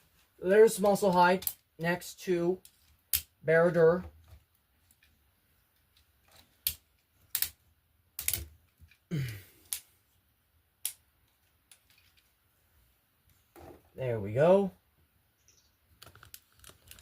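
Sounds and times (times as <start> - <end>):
plastic toy parts clicking: 1.4 - 1.6, 2.6 - 3.3, 5.8 - 7.6, 8.2 - 9.0
person grunting: 9.1 - 9.6.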